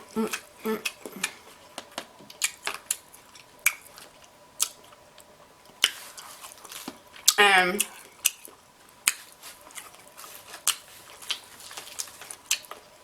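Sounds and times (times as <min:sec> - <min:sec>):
wet mouth smacking and chewing: 0:02.3 - 0:05.0, 0:05.8 - 0:12.9.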